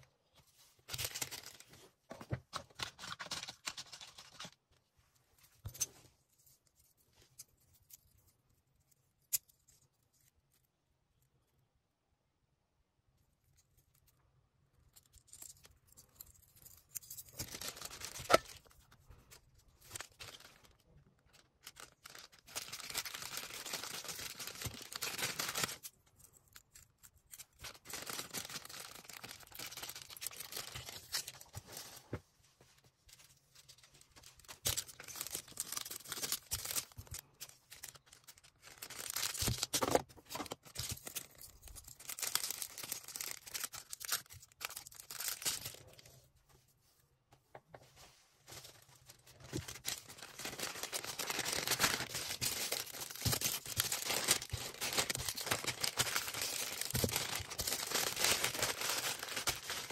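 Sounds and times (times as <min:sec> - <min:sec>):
plastic and paper rustling: 0:00.3 - 0:06.6, 0:16.5 - 0:26.4, 0:27.4 - 0:46.9, 0:47.8 - 0:59.9.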